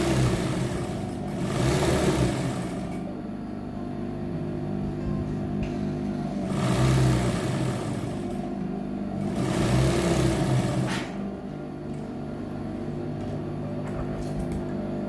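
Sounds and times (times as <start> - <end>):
electric sewing machine running: 0.0 - 3.2, 6.3 - 11.3.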